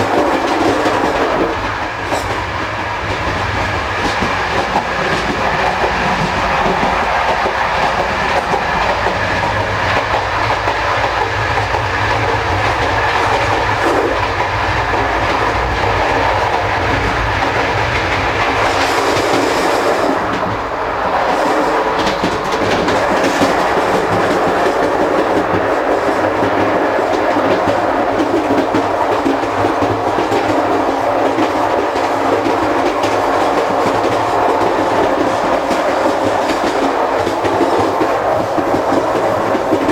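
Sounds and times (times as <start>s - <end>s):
train running rumble: 0.0s - 39.9s
wheels clattering on track: 21.2s - 39.9s.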